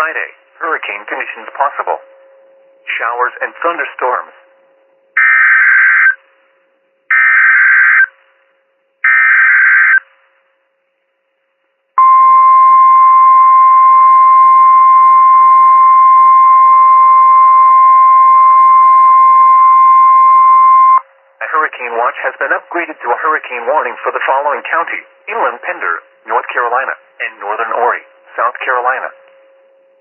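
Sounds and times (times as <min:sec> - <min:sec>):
steady alarm tone: 0:05.2 - 0:06.2, 0:07.1 - 0:08.1, 0:09.0 - 0:10.0, 0:12.0 - 0:21.0.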